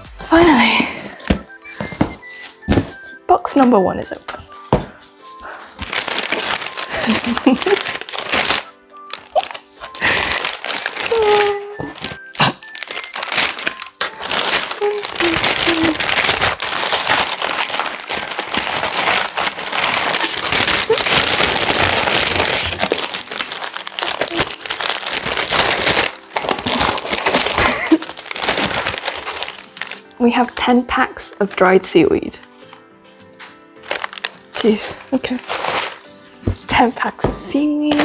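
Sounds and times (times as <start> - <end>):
background music: 0.0 - 38.0
packaging crinkling: 4.4 - 30.1, 33.5 - 38.0.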